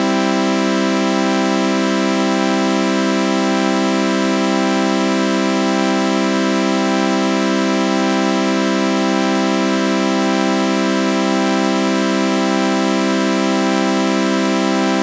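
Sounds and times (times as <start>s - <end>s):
buzzy synthesizer chord drone: 13.5s - 15.0s.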